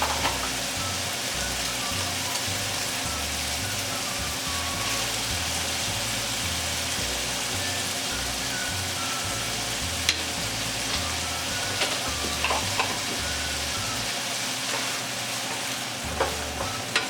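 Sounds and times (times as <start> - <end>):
food sizzling in a pan: 0.0 - 17.0.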